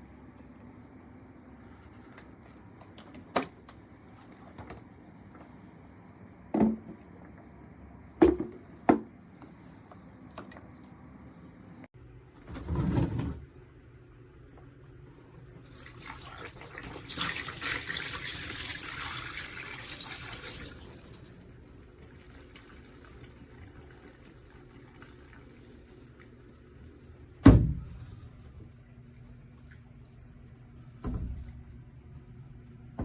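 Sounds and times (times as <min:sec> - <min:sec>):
water running: 0:15.2 - 0:26.6
dull thud: 0:27.4 - 0:28.2.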